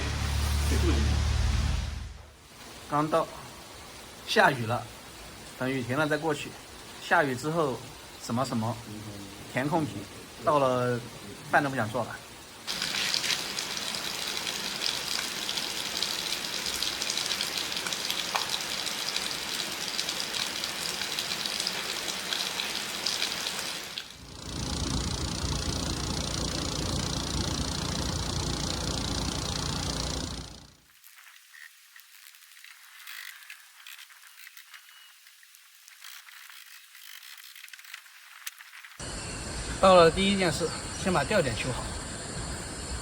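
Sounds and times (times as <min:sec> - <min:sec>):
deep rushing noise with rumble: 0:00.0 - 0:02.3
steady rain falling: 0:00.0 - 0:36.0.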